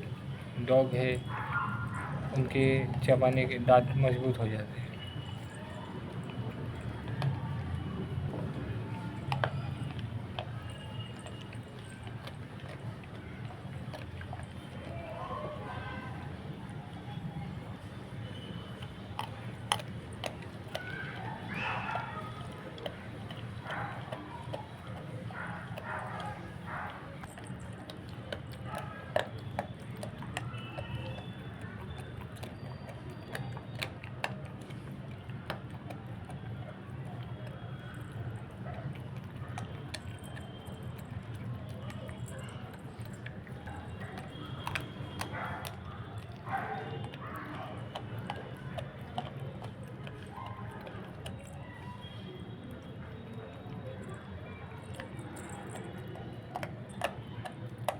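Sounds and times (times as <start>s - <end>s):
puppy chewing meat: 0.0s - 57.9s
teeth clicking: 9.1s - 14.9s, 18.5s - 57.9s.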